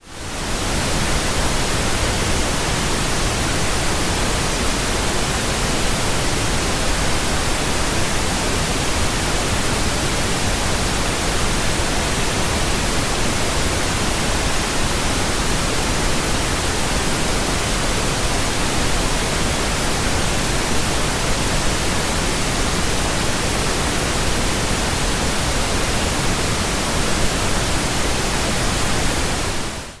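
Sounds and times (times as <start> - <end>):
pink noise hiss: 0.0 - 30.0.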